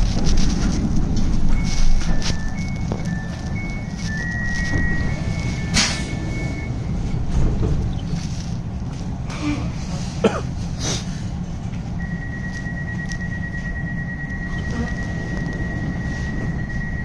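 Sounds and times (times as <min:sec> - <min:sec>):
tram rumbling: 0:00.0 - 0:17.0
high electronic tones: 0:01.4 - 0:07.2, 0:12.0 - 0:17.0.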